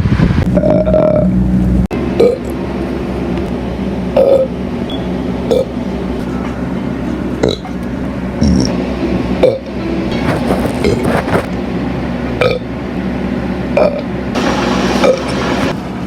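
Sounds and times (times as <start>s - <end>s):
steady low hum: 0.0s - 16.0s
person burping: 0.6s - 1.3s, 2.2s - 2.6s, 4.2s - 4.5s, 5.5s - 5.7s, 7.4s - 7.8s, 8.4s - 8.7s, 12.4s - 12.6s, 13.8s - 14.1s.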